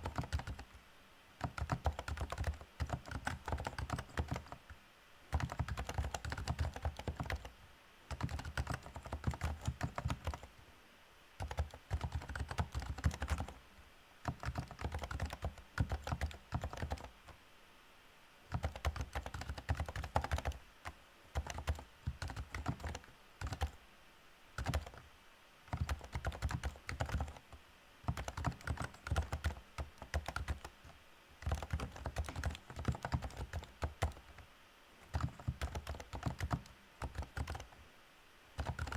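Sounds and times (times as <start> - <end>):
keyboard typing: 0.0 - 0.8, 1.4 - 10.6, 11.4 - 13.6, 14.2 - 17.4, 18.5 - 23.8, 24.6 - 25.0, 25.7 - 34.4, 35.0 - 37.8, 38.6 - 38.9.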